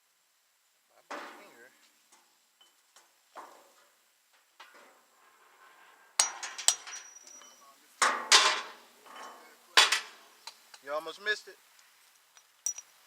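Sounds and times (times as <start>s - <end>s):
metallic knocks and clanks: 2.2s - 5.1s, 6.2s - 10.2s
metal clattering rattle: 4.5s - 10.2s.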